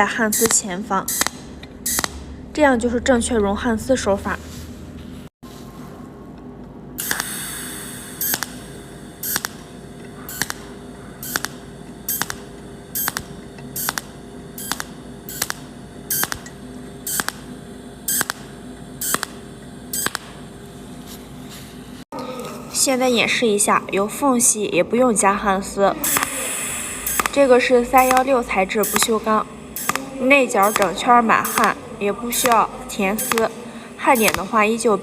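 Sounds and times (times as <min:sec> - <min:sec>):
steady low hum: 0:00.0 - 0:35.0
short sharp welding zaps: 0:00.3 - 0:02.3, 0:07.0 - 0:20.4, 0:26.0 - 0:35.0
hiss: 0:07.0 - 0:09.6, 0:26.0 - 0:32.6.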